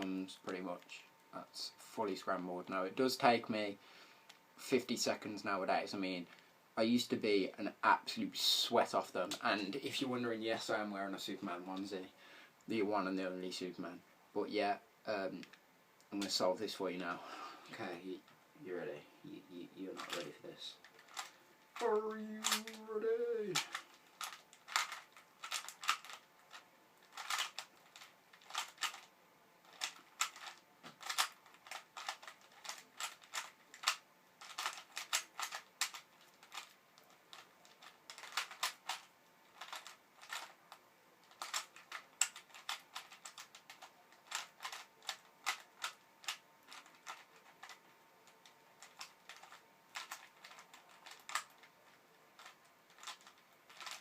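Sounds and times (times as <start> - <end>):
puzzle cube plastic clicks: 20.0 - 54.0.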